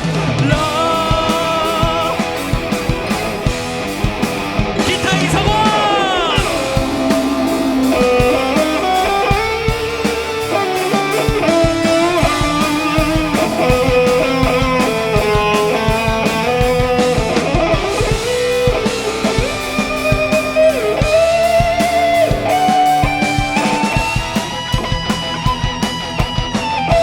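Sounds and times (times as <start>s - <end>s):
rock band drums: 0.0s - 27.0s
electric guitar solo: 0.6s - 27.0s.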